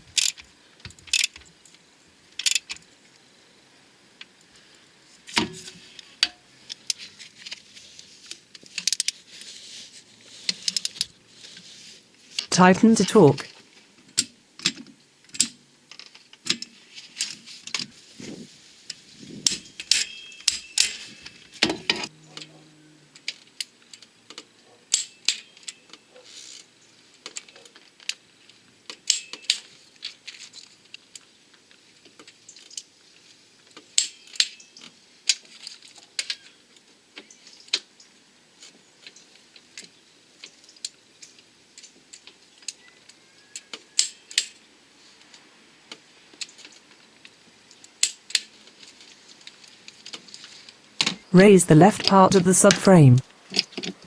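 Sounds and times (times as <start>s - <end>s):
torque wrench clicking on bolts: 0.2s - 0.4s, 1.1s - 1.4s.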